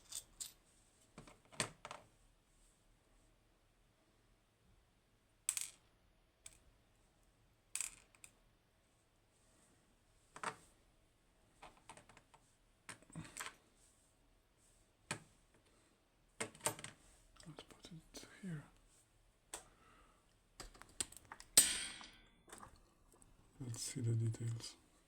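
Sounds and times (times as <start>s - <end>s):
small metal lock parts clinking: 0.0s - 0.6s.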